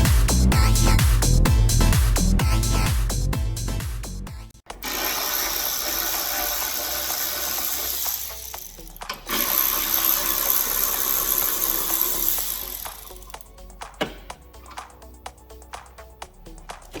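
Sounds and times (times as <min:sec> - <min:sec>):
workshop tool hissing: 0:04.8 - 0:13.3.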